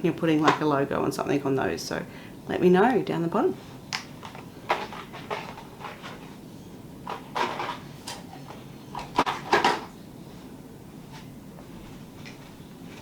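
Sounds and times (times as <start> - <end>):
household objects knocking and clattering: 9.0 - 9.9.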